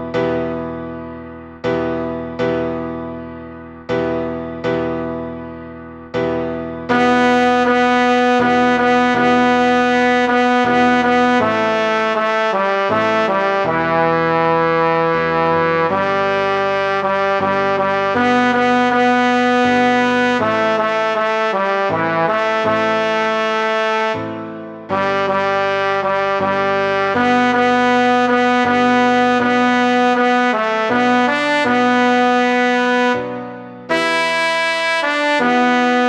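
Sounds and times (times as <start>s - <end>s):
synthesized brass-like chords: 0.0s - 36.0s.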